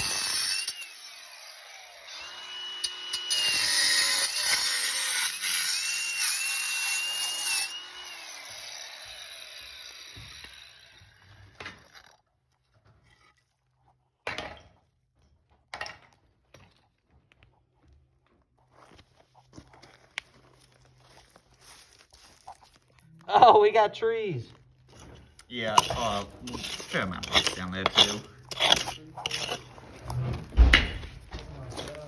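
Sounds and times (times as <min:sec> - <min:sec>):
power saw whining through pipe: 0:00.0 - 0:12.2, 0:24.9 - 0:32.0
knocks and scrapes: 0:11.2 - 0:17.6, 0:24.9 - 0:32.0.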